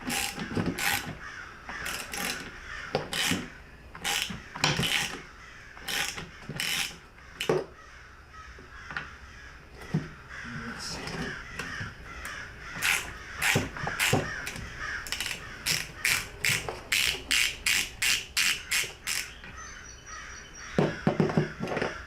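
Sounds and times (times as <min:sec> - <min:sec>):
ratchet clicking: 0:00.0 - 0:07.5, 0:12.2 - 0:19.5
knocks: 0:20.8 - 0:22.0.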